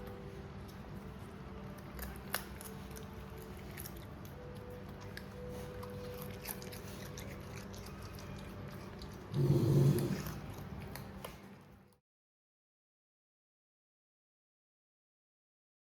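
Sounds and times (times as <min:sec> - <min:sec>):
raccoon chewing and crunching food: 0:00.0 - 0:12.0.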